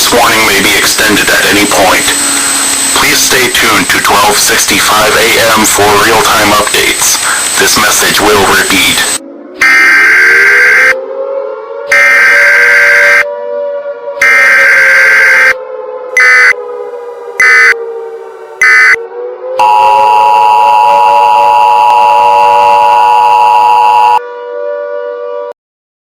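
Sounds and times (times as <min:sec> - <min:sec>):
digital data bursts: 0:00.0 - 0:11.0, 0:11.9 - 0:13.2, 0:14.2 - 0:15.6, 0:16.2 - 0:16.6, 0:17.4 - 0:17.8, 0:18.6 - 0:19.0
siren wailing: 0:00.0 - 0:25.5
two-tone attention signal: 0:01.2 - 0:11.0, 0:11.9 - 0:13.2, 0:14.2 - 0:15.6, 0:16.2 - 0:16.6, 0:17.4 - 0:17.8, 0:18.6 - 0:19.0, 0:19.6 - 0:24.2.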